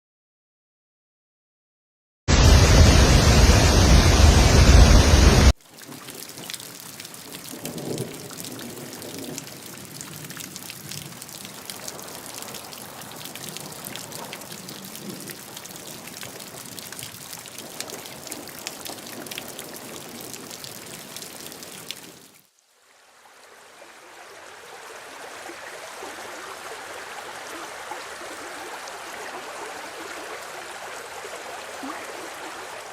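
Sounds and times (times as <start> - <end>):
loud rushing noise: 2.3 - 5.6
flowing water: 2.3 - 32.9
rain drops ticking: 5.4 - 22.7.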